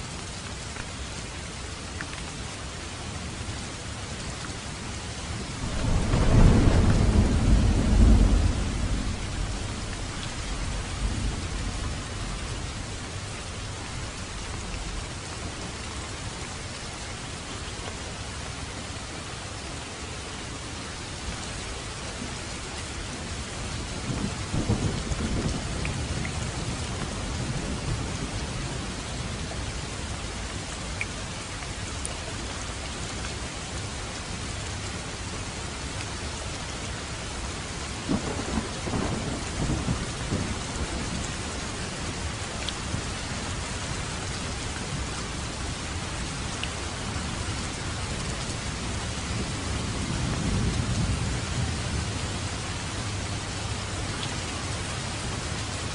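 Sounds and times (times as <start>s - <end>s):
steady rain falling: 0.0s - 55.9s
low thunder rolls: 5.6s - 12.7s, 49.0s - 52.2s.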